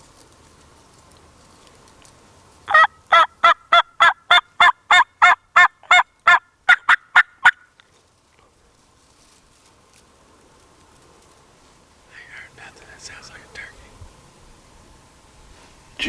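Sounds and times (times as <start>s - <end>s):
turkey call hen yelps: 2.7s - 7.7s.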